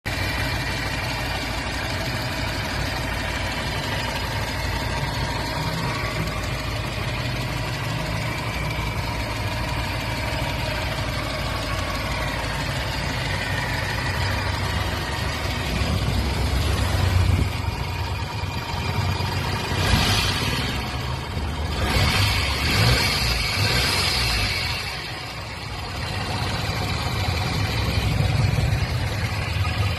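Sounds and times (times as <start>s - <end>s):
car engine idling and revving: 0.0s - 29.9s.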